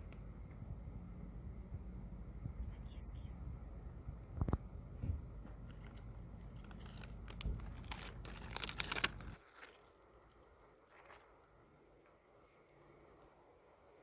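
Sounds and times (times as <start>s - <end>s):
crinkling and rustling: 5.4s - 11.7s.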